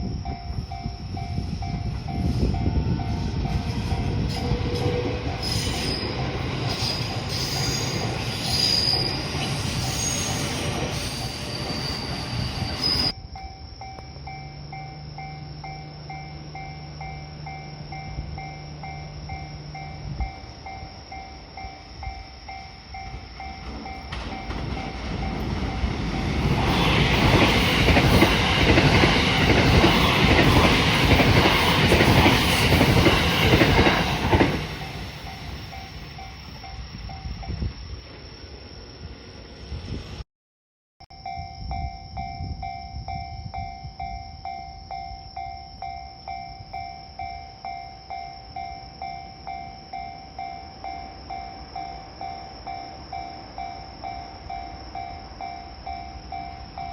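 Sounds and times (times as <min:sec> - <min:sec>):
electric trains passing: 0:00.0 - 0:40.2, 0:41.2 - 0:56.9
high wheel squeal: 0:02.1 - 0:13.2, 0:23.7 - 0:37.3.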